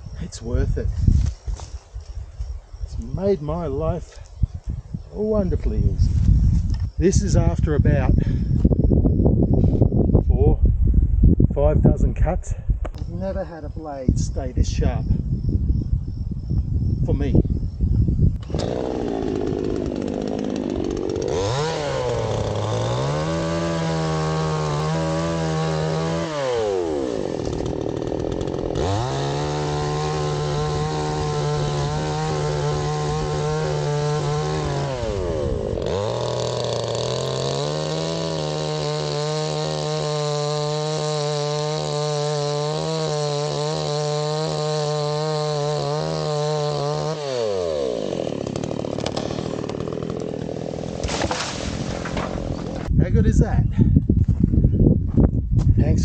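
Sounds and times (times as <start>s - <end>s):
chainsaw revving: 18.4s - 52.9s.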